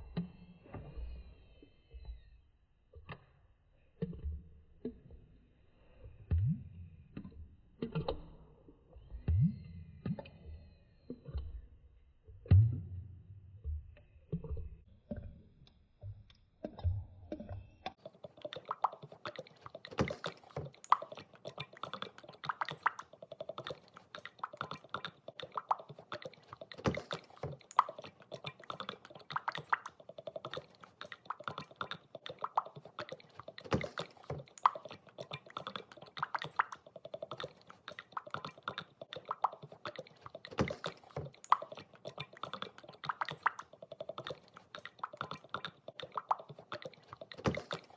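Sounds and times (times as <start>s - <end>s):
oil sloshing with wet gurgles: 13.6s - 47.9s.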